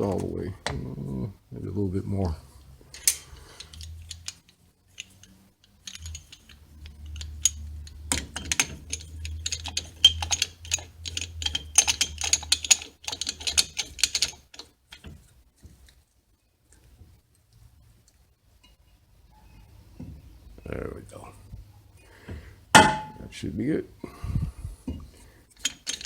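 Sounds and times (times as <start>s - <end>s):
metal tool clicking and rattling: 2.9s - 15.1s, 25.6s - 26.0s.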